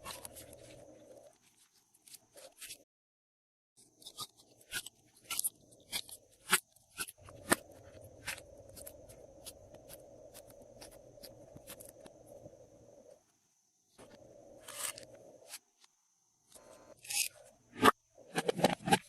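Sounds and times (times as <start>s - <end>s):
faint steady hum: 3.8s - 18.2s.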